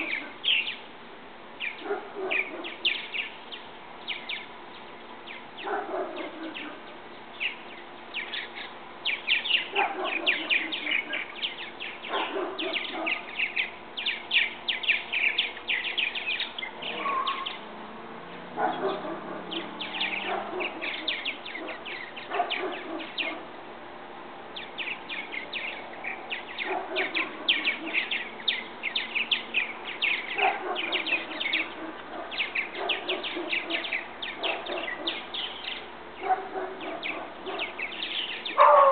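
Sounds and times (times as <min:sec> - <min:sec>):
birds chirping and chattering: 0:00.0 - 0:38.9.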